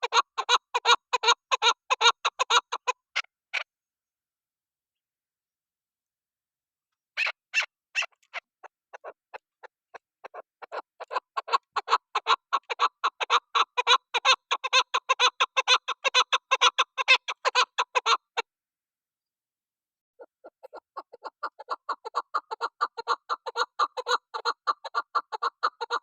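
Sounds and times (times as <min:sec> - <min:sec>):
partridge calling: 0:00.0 - 0:03.6, 0:07.2 - 0:18.4, 0:20.2 - 0:26.0.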